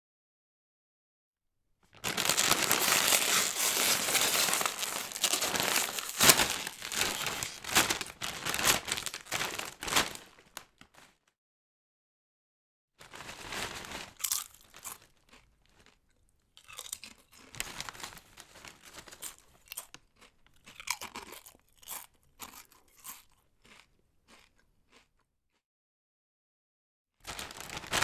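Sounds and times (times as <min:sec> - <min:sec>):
potato chips being chewed: 0:02.0 - 0:09.8, 0:14.1 - 0:25.6.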